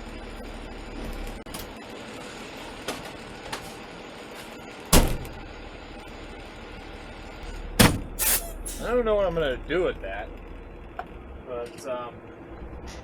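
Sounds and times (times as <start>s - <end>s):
loud short knock: 7.8s - 8.2s.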